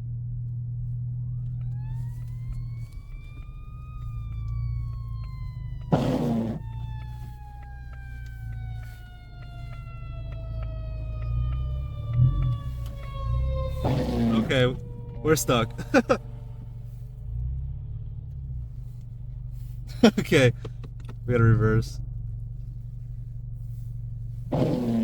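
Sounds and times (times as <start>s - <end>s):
car rumbling on road: 0.0s - 25.0s
emergency vehicle siren wailing: 1.2s - 20.6s.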